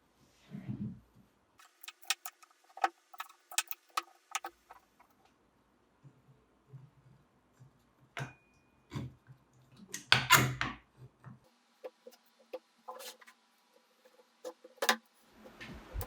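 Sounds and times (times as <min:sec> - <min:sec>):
hard objects knocking and clicking: 0:01.6 - 0:05.2, 0:10.0 - 0:13.3, 0:14.0 - 0:15.6.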